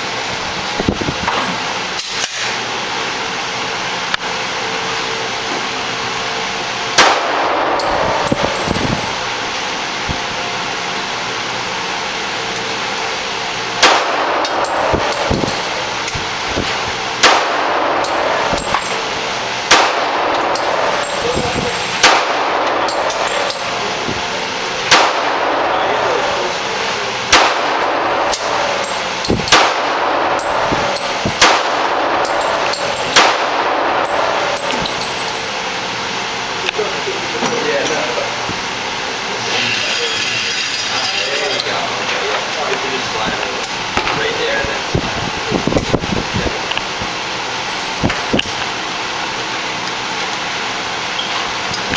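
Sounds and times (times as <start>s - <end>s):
pistol shots: 7.0s - 8.6s, 13.8s - 15.6s, 17.2s - 18.8s, 19.6s - 21.0s, 22.0s - 23.5s, 24.9s - 25.7s, 27.3s - 34.9s.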